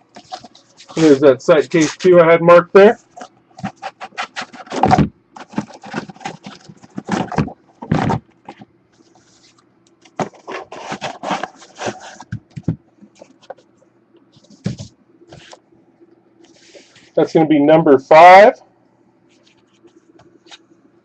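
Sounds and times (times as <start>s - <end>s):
cardboard boxes handled on table: 3.2s - 13.6s, 14.4s - 15.6s.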